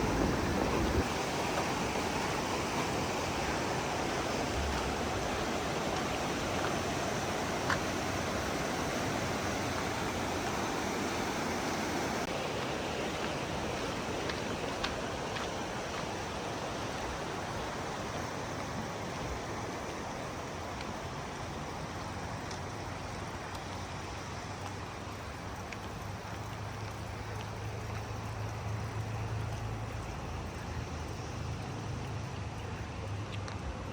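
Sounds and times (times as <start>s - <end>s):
waterfall rushing: 0.0s - 22.4s.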